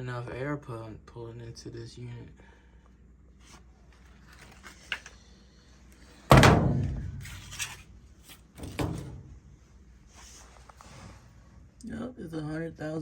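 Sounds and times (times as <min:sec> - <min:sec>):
loud metal clunk with ringing: 0:06.3 - 0:07.3.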